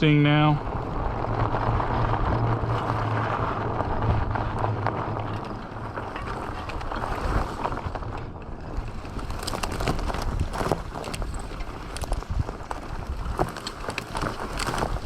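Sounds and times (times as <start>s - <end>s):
low hum: 0.0s - 10.2s
tyre rolling noise: 0.0s - 15.0s
wind on microphone: 0.0s - 15.0s.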